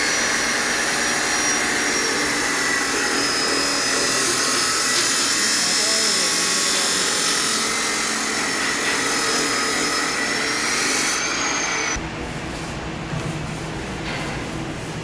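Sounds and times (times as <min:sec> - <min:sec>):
power tool whining: 0:00.0 - 0:12.0.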